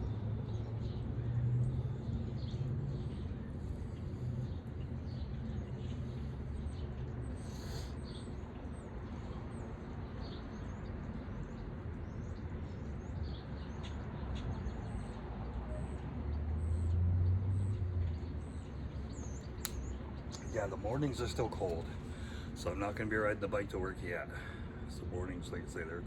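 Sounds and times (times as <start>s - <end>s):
small birds chirping: 0.0s - 16.0s, 16.7s - 26.0s.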